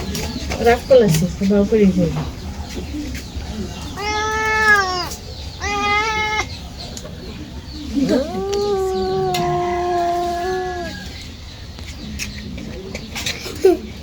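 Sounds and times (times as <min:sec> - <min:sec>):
cat meowing: 0:03.8 - 0:06.6, 0:08.1 - 0:11.0.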